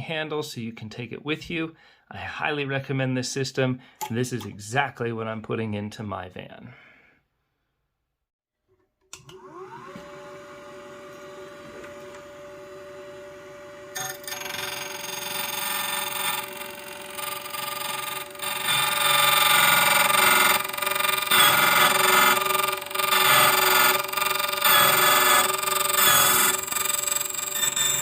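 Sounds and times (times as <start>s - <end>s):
machine motor whining: 9.3s - 28.0s
cutter grinding metal key: 14.0s - 28.0s.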